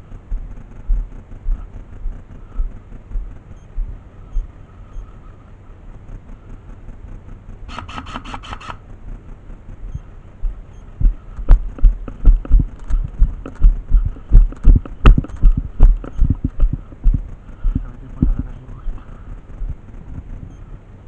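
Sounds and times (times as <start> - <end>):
rapid pitched pulses: 0.0 - 20.8
running footsteps on hard ground: 10.4 - 19.0.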